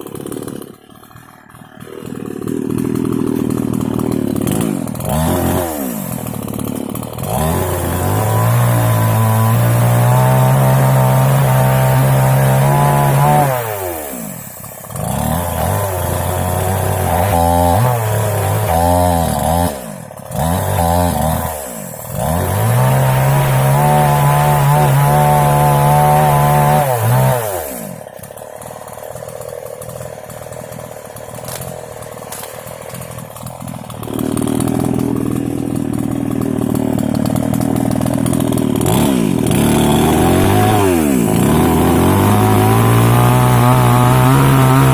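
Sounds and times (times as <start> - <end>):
mini chainsaw revving: 0.0 - 44.9.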